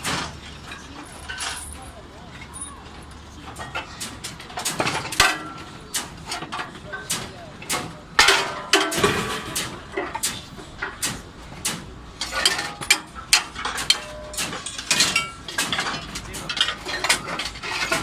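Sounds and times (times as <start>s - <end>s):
metal panels clanking together: 0.0s - 18.0s.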